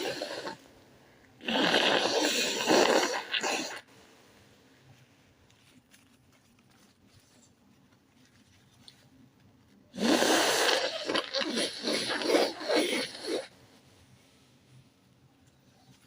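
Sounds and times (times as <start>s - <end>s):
person stifled sneezing: 10.0s - 13.5s.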